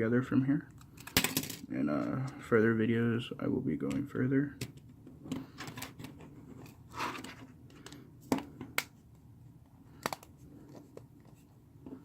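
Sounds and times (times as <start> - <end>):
plastic scrape: 5.4 - 7.9.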